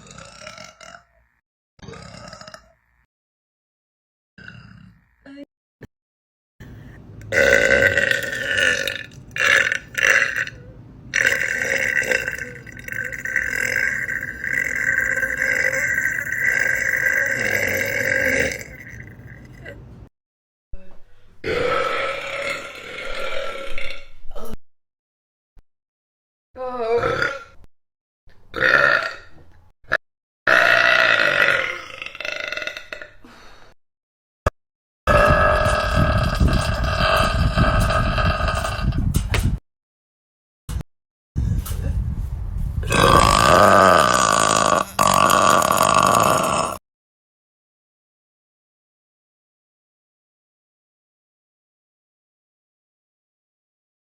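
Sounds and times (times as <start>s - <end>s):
person burping: 0.0s - 1.1s, 1.8s - 2.8s, 4.4s - 5.0s, 7.3s - 19.8s, 21.4s - 24.6s, 27.0s - 27.6s, 28.6s - 29.3s, 29.9s - 33.5s, 35.1s - 39.1s, 42.8s - 46.8s.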